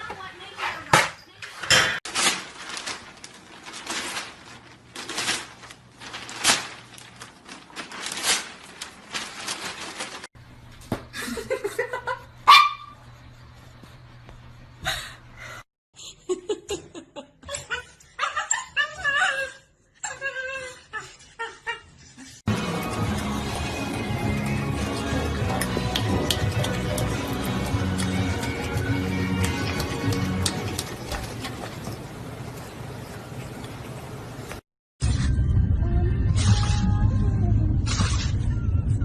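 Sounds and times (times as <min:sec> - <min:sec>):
people laughing: 0:11.2 - 0:12.3
dog barking and whining: 0:12.5 - 0:13.0.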